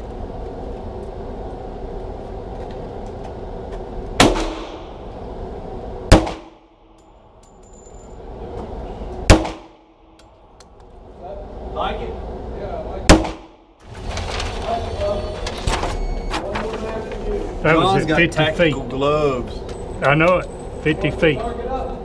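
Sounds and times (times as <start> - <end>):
pistol shots indoors: 4.2 - 5.0, 6.1 - 7.0, 9.3 - 10.2, 13.1 - 13.7.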